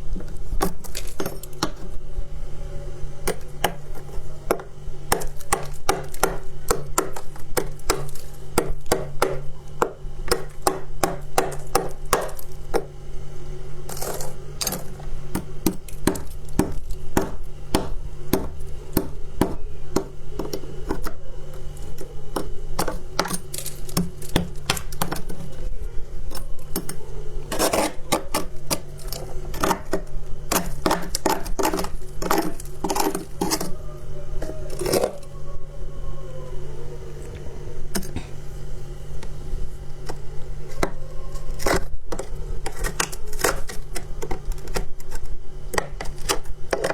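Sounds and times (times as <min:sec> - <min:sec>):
chewing crunchy ice: 0:26.2 - 0:33.8.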